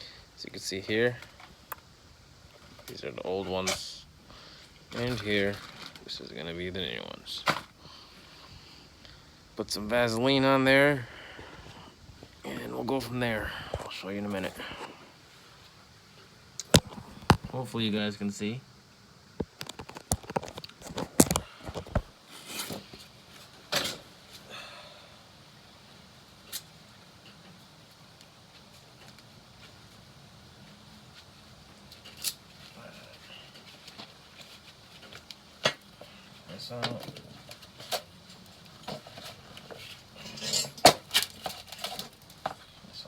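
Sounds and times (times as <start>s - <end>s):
small clicks and knocks: 19.4s - 22.1s.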